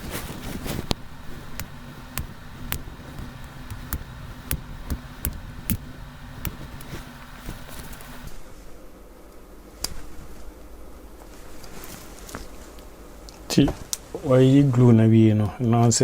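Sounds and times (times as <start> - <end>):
steady low hum: 0.0 - 15.7
small tools clicking on phone parts: 0.8 - 8.3.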